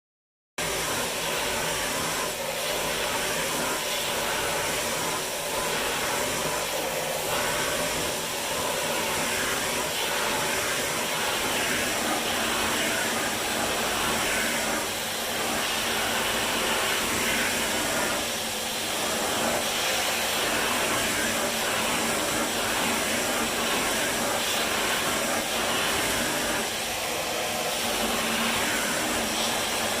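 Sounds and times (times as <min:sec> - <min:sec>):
vacuum cleaner running: 0:00.6 - 0:30.0.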